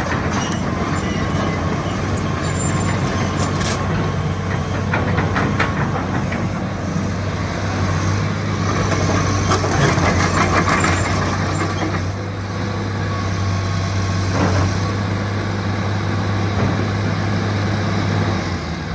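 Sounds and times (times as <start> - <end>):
excavator diesel engine running: 0.0 - 18.9
metallic clattering and squeaking: 0.1 - 6.5, 8.8 - 12.1.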